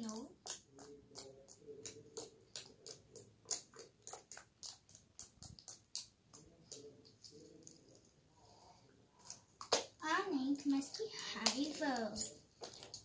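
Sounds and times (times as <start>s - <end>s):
slime squeezed making clicking pops: 0.0s - 6.8s.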